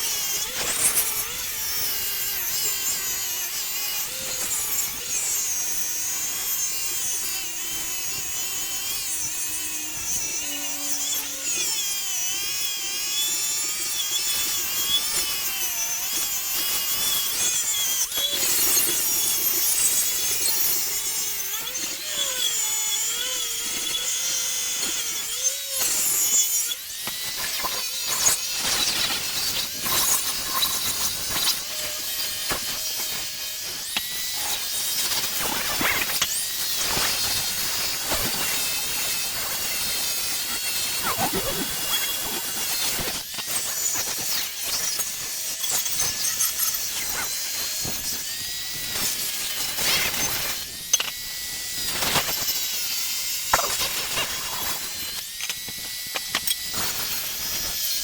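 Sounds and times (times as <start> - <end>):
wire wheel grinding steel: 33.9 - 47.3.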